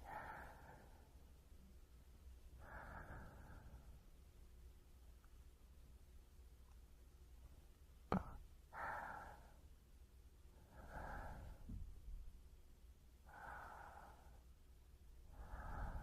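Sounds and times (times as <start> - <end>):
close breathing: 0.0 - 1.6, 2.5 - 4.2, 8.7 - 9.8, 10.5 - 12.0, 13.2 - 16.0.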